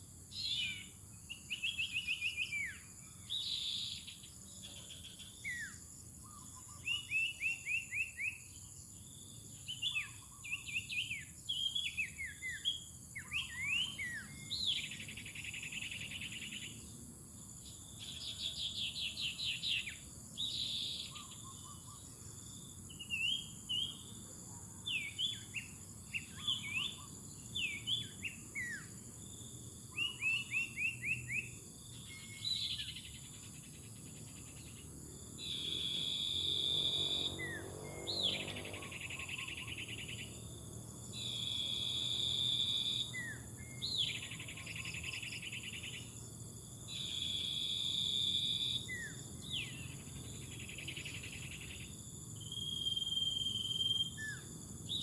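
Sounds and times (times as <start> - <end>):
small birds chirping and trilling: 0.4 - 55.0
high insect drone: 25.3 - 55.0.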